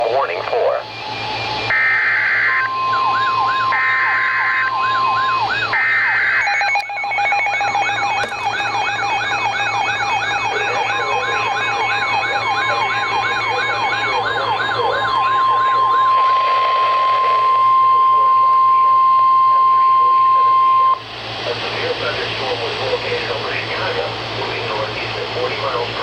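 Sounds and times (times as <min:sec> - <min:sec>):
siren wailing up and down: 0:00.6 - 0:21.0.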